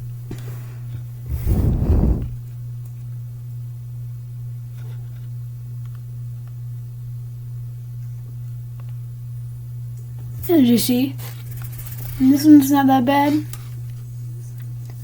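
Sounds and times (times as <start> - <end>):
steady low hum: 1.1 - 2.4
loud low rumble: 1.3 - 2.4.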